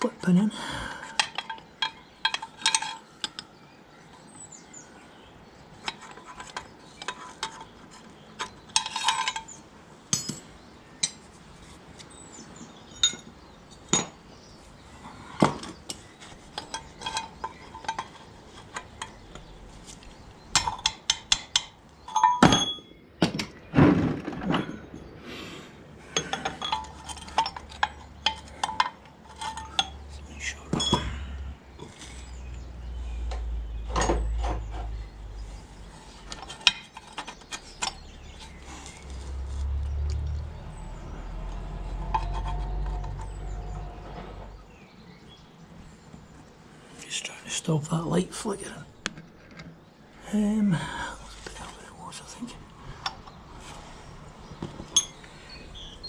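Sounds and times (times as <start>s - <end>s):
metal tools clinking and tapping: 1.1s - 3.5s, 5.8s - 11.2s, 12.8s - 14.2s, 15.6s - 23.5s, 26.1s - 32.3s, 36.2s - 40.3s, 41.3s - 44.3s, 54.6s - 55.5s.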